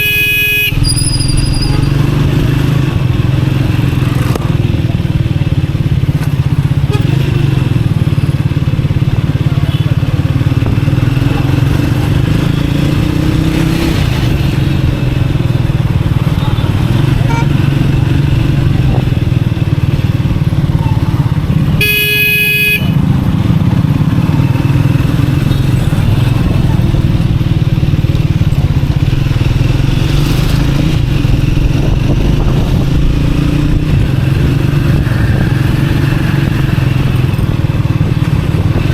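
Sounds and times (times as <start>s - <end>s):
motorcycle engine running: 0.0s - 38.9s
horn: 21.8s - 22.9s.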